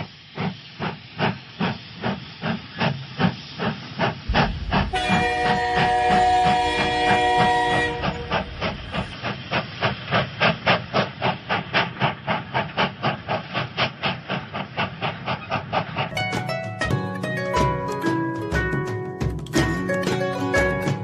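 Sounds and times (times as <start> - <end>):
locomotive chuffing: 0.0 - 21.0
steam locomotive whistle: 4.7 - 9.1.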